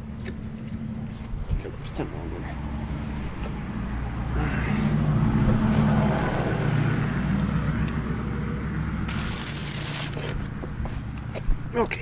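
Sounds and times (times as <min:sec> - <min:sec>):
vehicle engine passing by: 0:00.5 - 0:11.2.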